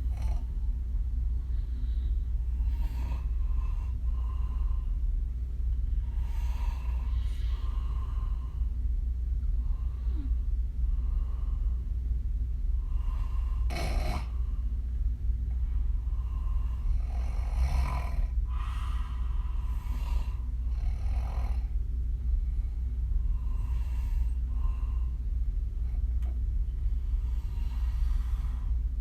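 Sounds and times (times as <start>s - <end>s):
woman snoring: 0.0s - 0.5s, 2.6s - 3.7s, 6.1s - 8.3s, 12.9s - 14.4s, 16.2s - 19.0s, 19.6s - 21.7s
steady low hum: 0.0s - 29.0s.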